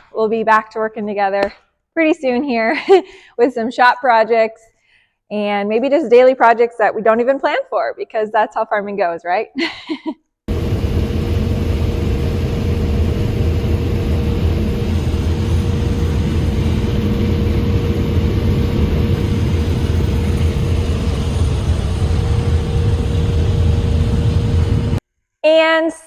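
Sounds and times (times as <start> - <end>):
engine running steadily: 10.5 - 25.0.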